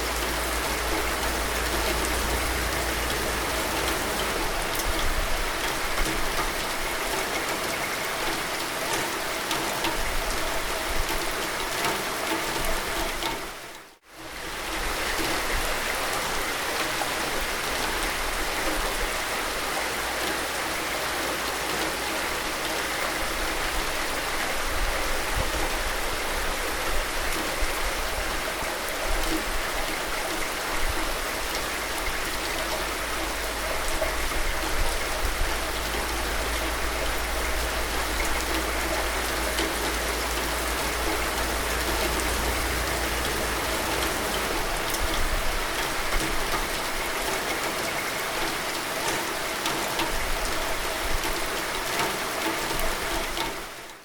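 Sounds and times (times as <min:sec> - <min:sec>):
low rumble: 0:00.0 - 0:06.1, 0:32.6 - 0:46.1
steady rain hiss: 0:00.0 - 0:54.0.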